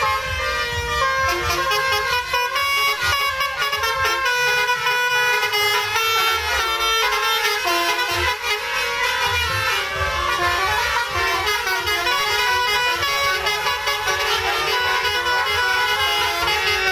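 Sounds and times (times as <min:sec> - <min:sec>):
bus musical horn melody: 0:00.0 - 0:16.9.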